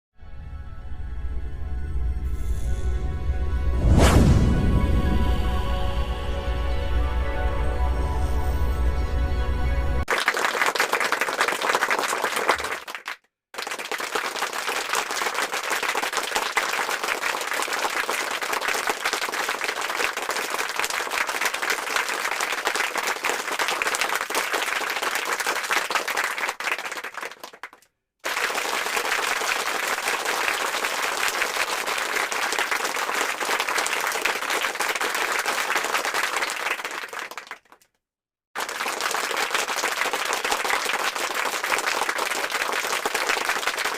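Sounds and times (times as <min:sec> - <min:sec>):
crowd applause: 0:10.1 - 0:37.8, 0:38.6 - 0:43.9.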